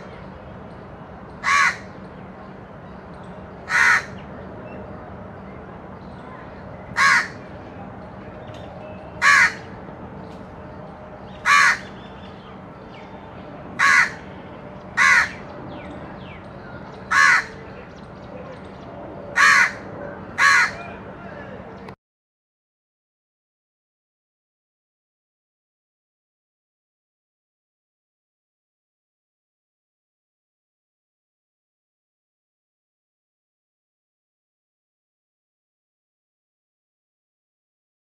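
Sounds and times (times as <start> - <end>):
crow cawing: 1.4 - 1.9, 3.7 - 4.2, 7.0 - 7.4, 9.2 - 9.7, 11.4 - 11.9, 13.8 - 14.3, 15.0 - 15.4, 17.1 - 17.6, 19.4 - 21.0.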